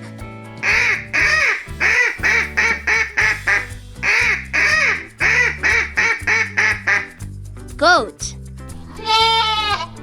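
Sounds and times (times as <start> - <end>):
cheerful backing music: 0.0 - 10.0
duck quacking: 0.6 - 7.2.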